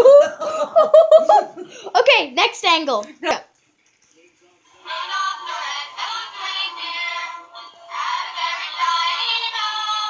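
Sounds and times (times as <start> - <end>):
high synthetic singing with music: 4.8 - 10.0.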